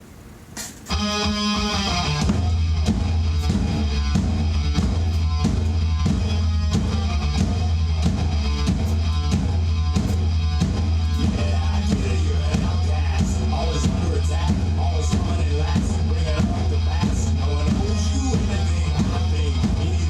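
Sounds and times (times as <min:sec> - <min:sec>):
drum kit driving beat: 0:00.6 - 0:20.0
heavy electric guitar: 0:00.6 - 0:20.0
sustained low bass: 0:01.0 - 0:20.0.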